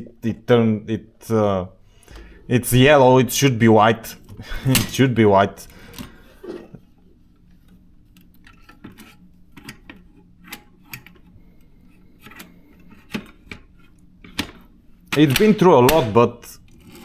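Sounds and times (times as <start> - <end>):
typewriter parts clicking and knocking: 14.2 - 16.2.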